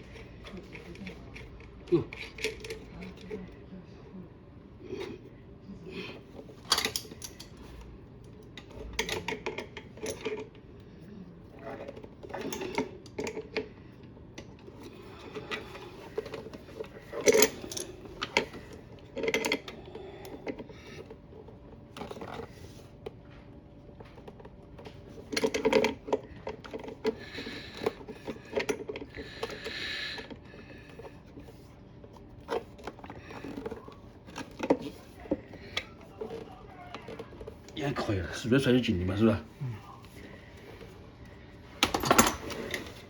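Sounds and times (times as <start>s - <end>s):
tools and metal parts clanking: 6.4s - 7.8s, 8.5s - 10.5s, 14.4s - 21.2s, 24.0s - 31.7s, 32.4s - 39.4s, 41.8s - 43.0s.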